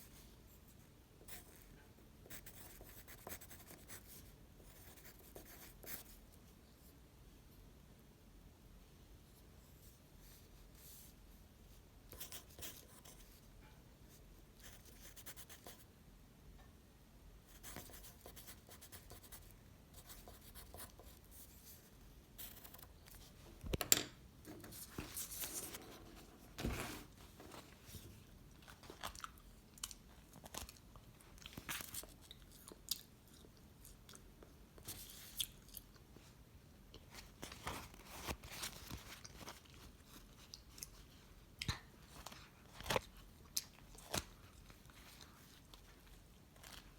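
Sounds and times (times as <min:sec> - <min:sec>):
chewing and crunching: 0:28.5 - 0:34.4.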